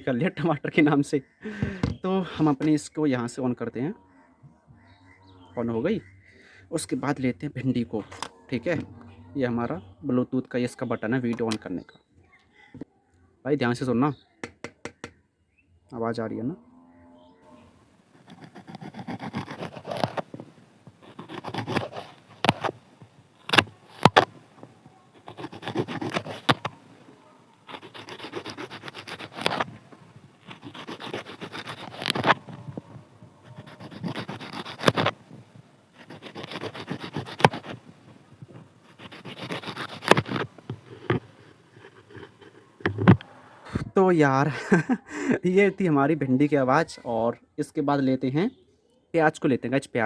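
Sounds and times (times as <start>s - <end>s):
knife cutting vegetables: 18.2s - 20.4s, 21.0s - 22.8s, 25.1s - 26.9s, 27.6s - 32.8s, 33.4s - 35.2s, 36.0s - 37.8s, 38.8s - 43.2s.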